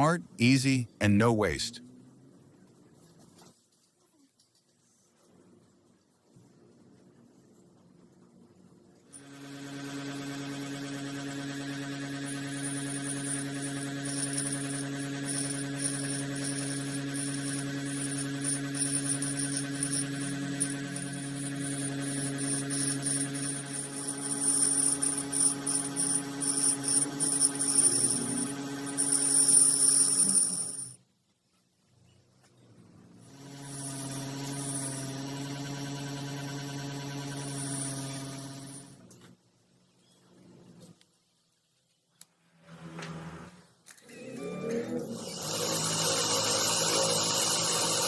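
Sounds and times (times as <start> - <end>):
electric motor humming: 9.2 - 30.9, 33.3 - 38.9, 44.4 - 48.0
high-pitched grinding: 10.8 - 31.0, 33.4 - 38.8, 45.2 - 48.0.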